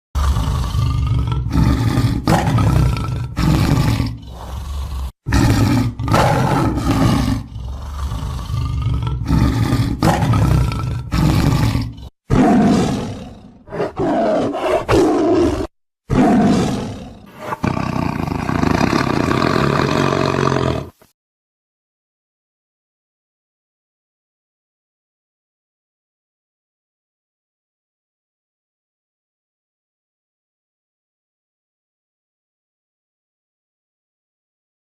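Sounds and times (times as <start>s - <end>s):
cat roaring and growling: 0.2s - 21.0s.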